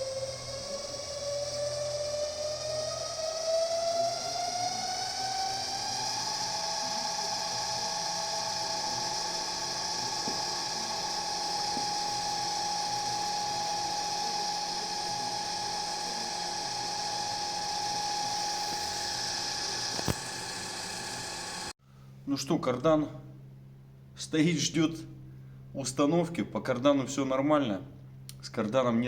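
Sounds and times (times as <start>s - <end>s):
machine high-pitched whine: 0.0s - 21.8s.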